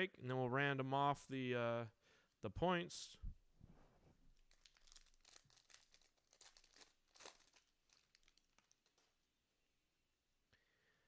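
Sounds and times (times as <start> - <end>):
wrapper crinkling and tearing: 4.3 - 9.3.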